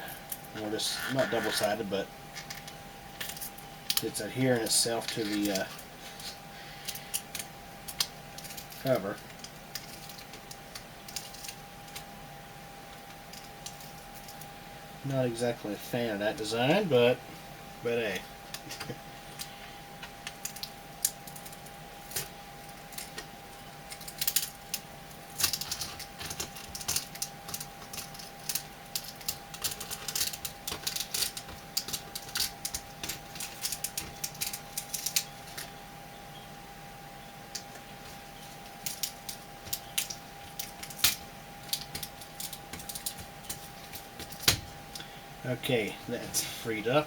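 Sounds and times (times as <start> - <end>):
plastic bezel clicking and crackling: 25.4 - 35.7.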